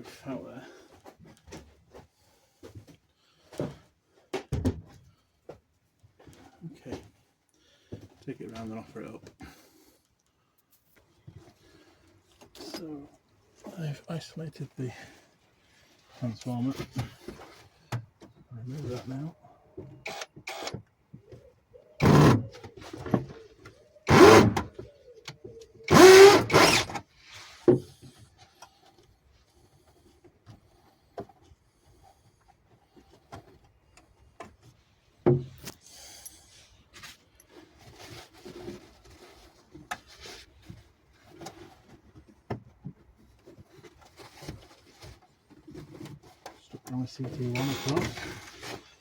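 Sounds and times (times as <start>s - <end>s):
power drill-driver running: 20.0s - 20.8s, 22.0s - 22.4s, 24.1s - 24.7s, 25.9s - 27.0s, 47.5s - 48.2s.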